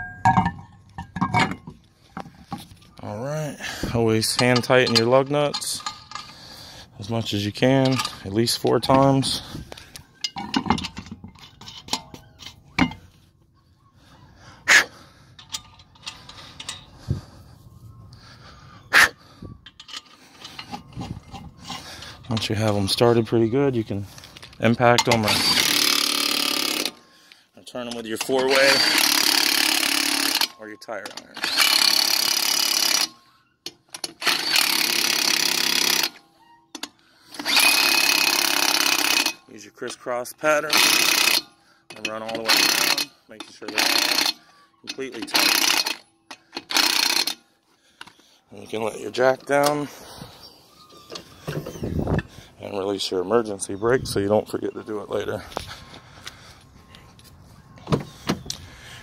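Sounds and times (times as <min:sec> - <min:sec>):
lug nuts clicking and scraping: 0:00.0 - 0:03.0, 0:03.8 - 0:13.2, 0:15.3 - 0:17.0, 0:19.6 - 0:50.0
impact wrench bursts: 0:24.9 - 0:27.0, 0:28.2 - 0:30.6, 0:31.2 - 0:33.1, 0:34.0 - 0:36.2, 0:37.3 - 0:39.4, 0:40.7 - 0:41.5, 0:42.3 - 0:47.4.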